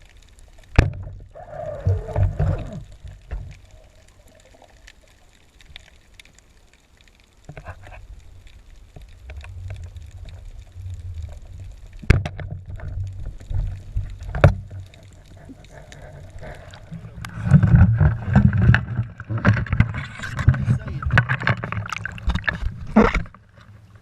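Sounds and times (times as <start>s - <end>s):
water sloshing: 9.2s - 24.0s.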